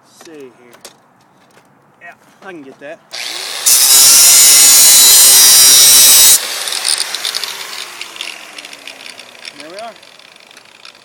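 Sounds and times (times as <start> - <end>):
rotary tool grinding metal: 3.1 - 11.0
rotary tool winding down whine: 3.2 - 11.0.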